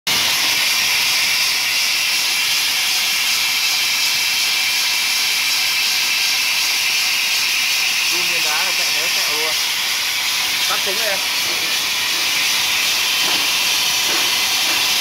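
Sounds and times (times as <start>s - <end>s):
compressed air hiss: 10.4s - 15.0s.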